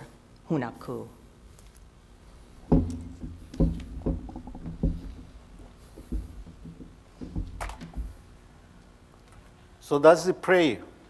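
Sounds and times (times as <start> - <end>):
loud thud: 2.6 - 5.2
dull thumps and knocks: 2.6 - 8.3.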